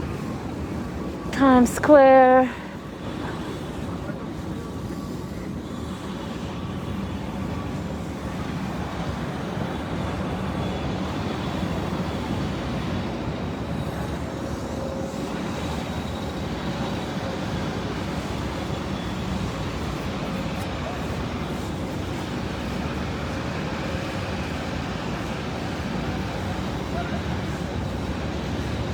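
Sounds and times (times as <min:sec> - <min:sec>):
city traffic rumble: 0:00.0 - 0:28.9.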